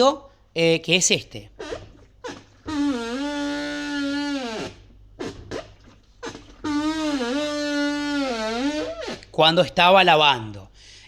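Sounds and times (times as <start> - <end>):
washing machine squealing: 1.5 - 9.9.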